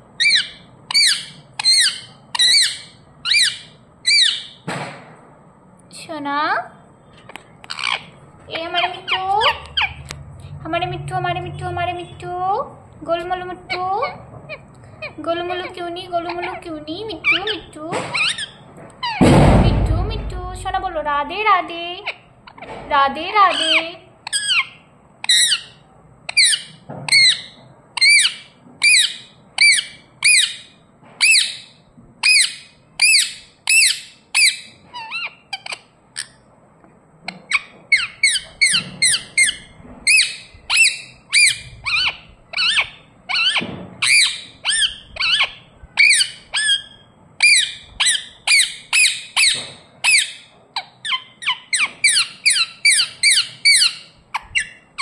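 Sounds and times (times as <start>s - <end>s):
parrot squawking chirps: 0.2s - 4.6s, 7.6s - 10.1s, 17.2s - 19.2s, 23.4s - 36.4s, 37.3s - 55.0s.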